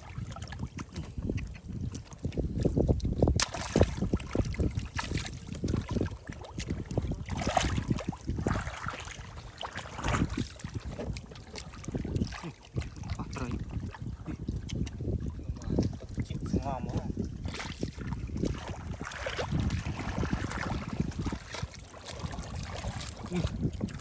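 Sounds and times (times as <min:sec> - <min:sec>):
splashing in shallow water: 0:00.0 - 0:24.0.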